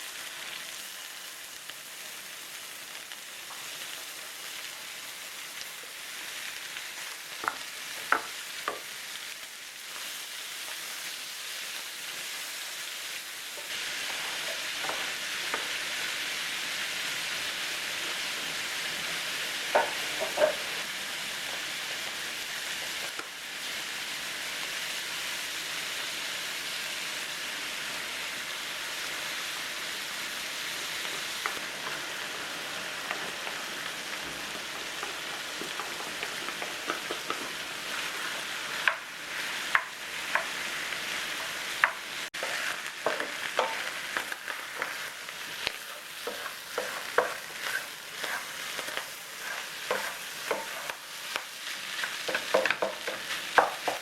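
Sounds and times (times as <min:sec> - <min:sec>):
food sizzling in a pan: 0:00.0 - 0:54.0.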